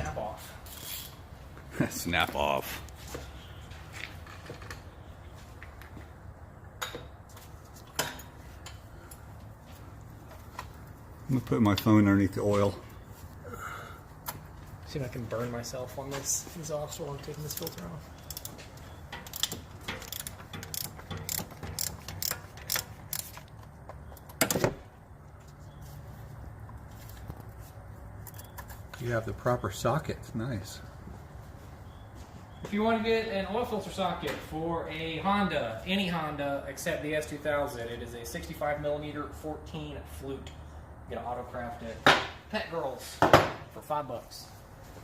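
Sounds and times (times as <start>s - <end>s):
ratchet clicking: 17.5s - 23.5s.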